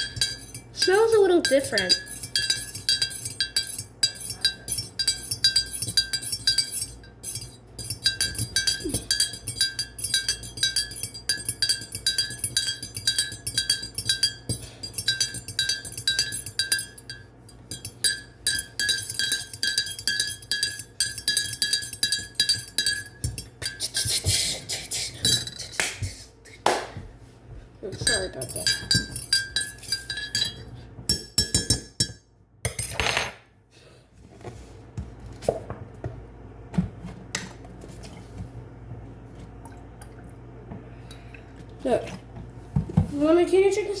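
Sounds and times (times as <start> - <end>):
fork clinking in teacup: 0.0 - 24.3, 28.0 - 33.2.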